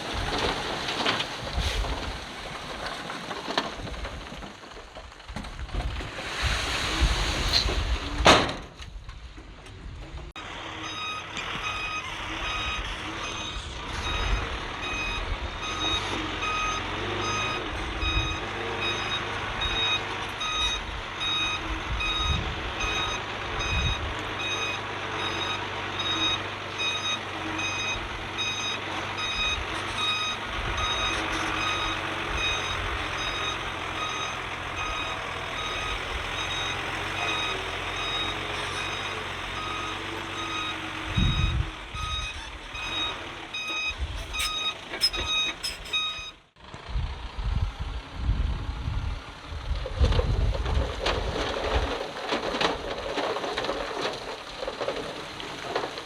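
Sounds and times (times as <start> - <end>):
diesel engine rumble: 0.0 - 56.0
backup alarm beeping: 10.8 - 46.4.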